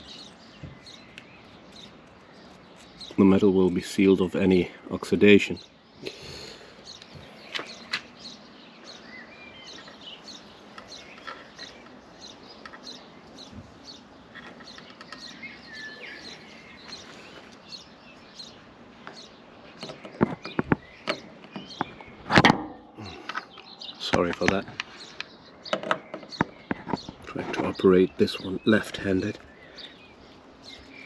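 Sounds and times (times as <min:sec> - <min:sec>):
small birds chirping: 0:00.0 - 0:31.0
sharp knocks: 0:19.8 - 0:23.0.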